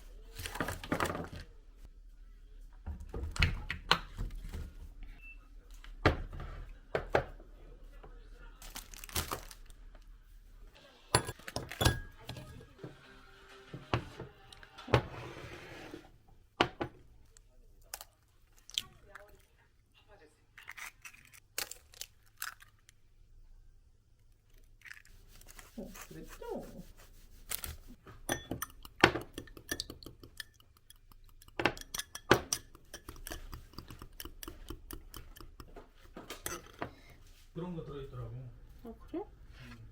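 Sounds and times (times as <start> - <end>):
faint music: 4.9 - 15.4
hard objects knocking and clinking: 11.2 - 12.4, 28.1 - 36.9.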